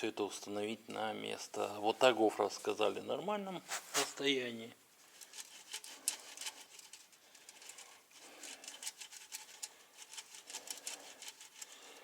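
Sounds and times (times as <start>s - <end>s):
parts clicking and scratching: 5.0s - 12.0s.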